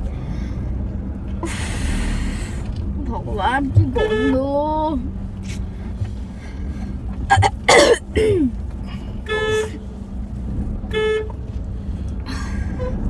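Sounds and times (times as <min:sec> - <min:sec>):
car engine and road rumble: 0:00.0 - 0:13.0
car horn toots: 0:03.8 - 0:04.4, 0:07.3 - 0:08.3, 0:09.2 - 0:09.8, 0:10.9 - 0:11.4.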